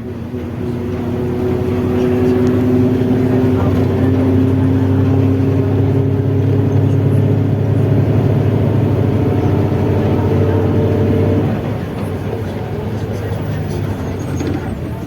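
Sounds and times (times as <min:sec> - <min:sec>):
bus diesel engine droning: 0:00.0 - 0:15.0
driveshaft growling: 0:00.0 - 0:15.0.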